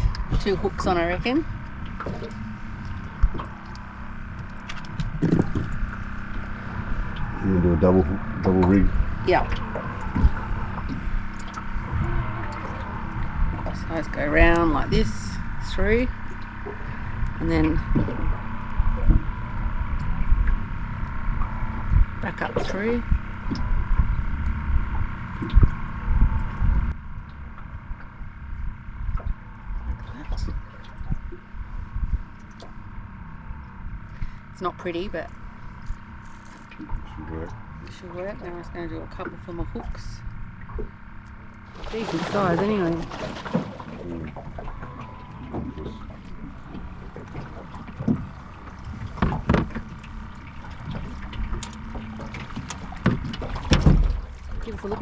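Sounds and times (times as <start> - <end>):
wind buffeting microphone: 0.0 - 27.0
boat motor hum: 0.0 - 55.0
low rumble of hull and water: 0.0 - 55.0
sharp knocks on boat: 4.7 - 5.8, 41.8 - 55.0.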